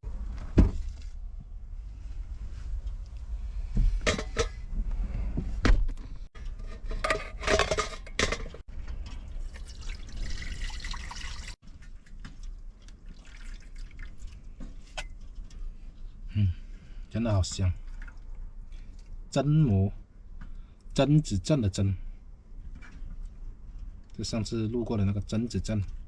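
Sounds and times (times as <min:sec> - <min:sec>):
water splashing and pouring: 0:09.0 - 0:14.6.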